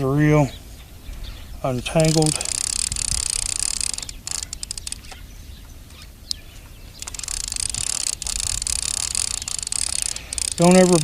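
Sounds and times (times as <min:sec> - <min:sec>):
bird chirp: 0:00.0 - 0:11.0
fishing reel whirring: 0:01.9 - 0:05.1, 0:07.0 - 0:11.0
quick reel clicks: 0:01.9 - 0:05.2, 0:07.0 - 0:11.0.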